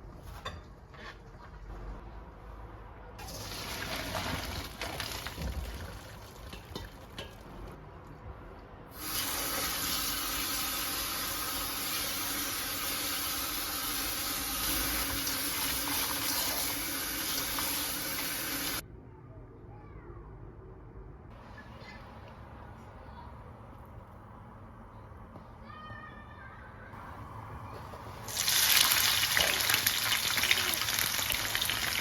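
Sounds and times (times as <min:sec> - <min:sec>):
tap water running into sink: 0:09.0 - 0:18.8.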